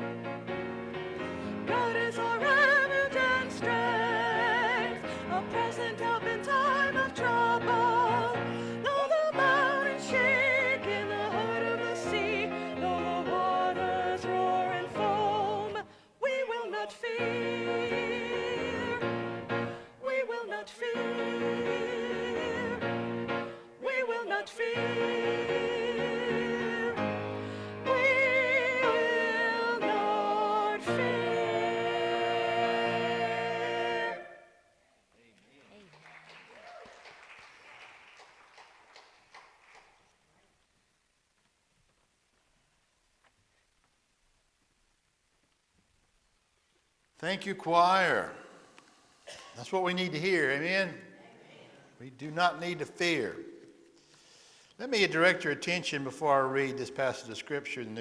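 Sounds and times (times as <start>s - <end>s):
church choir singing: 0.0s - 34.7s.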